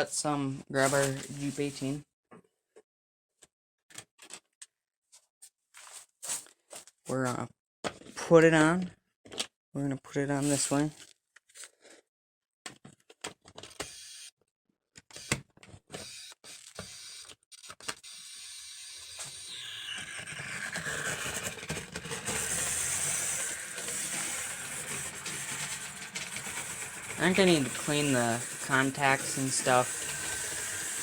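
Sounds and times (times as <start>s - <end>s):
model train motor whirring: 16.0s - 31.0s
wheel clatter on track: 20.8s - 31.0s.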